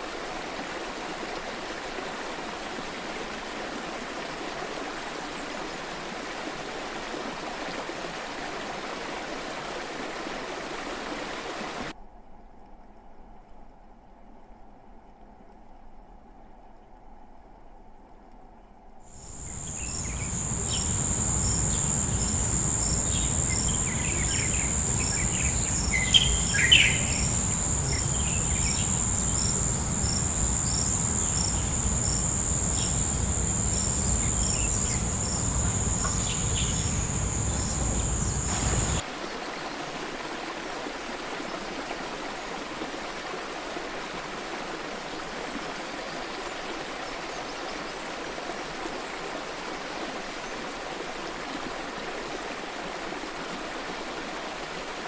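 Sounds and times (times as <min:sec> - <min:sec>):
insect trill: 0:19.1 - 0:39.0
bird chirps: 0:19.3 - 0:39.0
waterfall rushing: 0:20.2 - 0:45.6.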